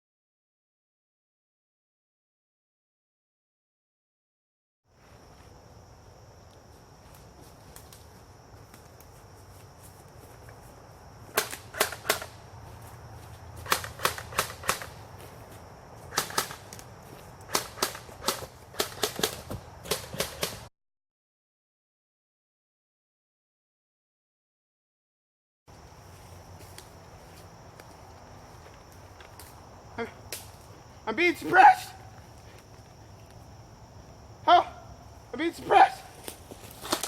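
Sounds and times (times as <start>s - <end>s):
airsoft guns firing: 11.3s - 12.4s, 13.6s - 15.0s, 16.1s - 16.6s, 17.5s - 20.7s.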